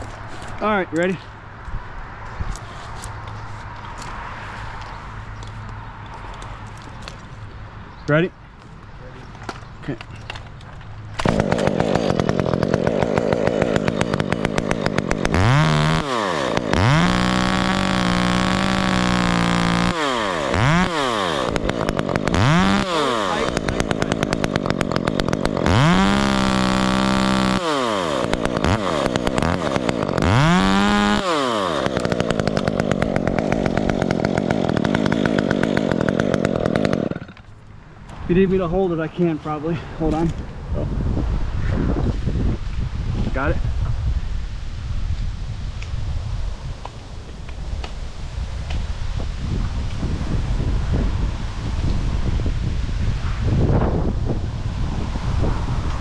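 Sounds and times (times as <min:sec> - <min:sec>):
chainsaw revving: 0:11.2 - 0:37.6.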